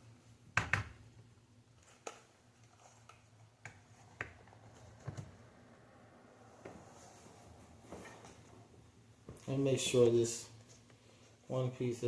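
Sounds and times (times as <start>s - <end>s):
console parts clicking and knocking: 0.5s - 1.1s.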